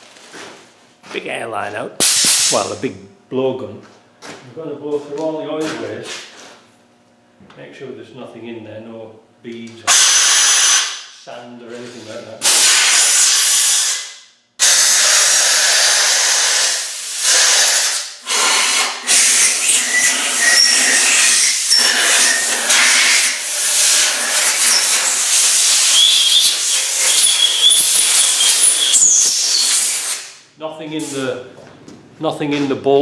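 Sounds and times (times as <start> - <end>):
compressed air blowgun hissing: 9.9 - 11.2, 12.5 - 14.0, 14.7 - 30.4
thin whistling tones: 25.8 - 29.7.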